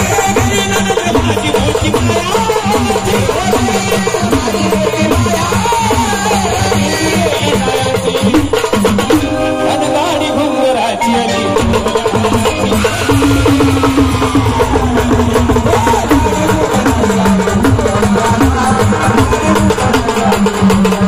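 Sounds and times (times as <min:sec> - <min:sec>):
fast drumming: 0:00.0 - 0:21.0
gliding melody: 0:09.3 - 0:19.5.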